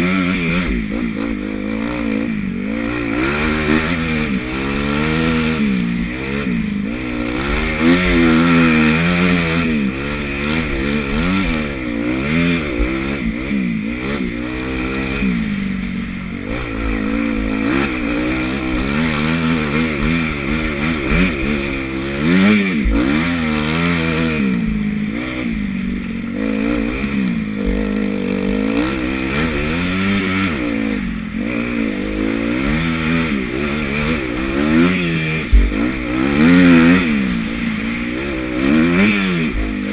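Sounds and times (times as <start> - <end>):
motocross bike engine revving: 0.0 - 39.9.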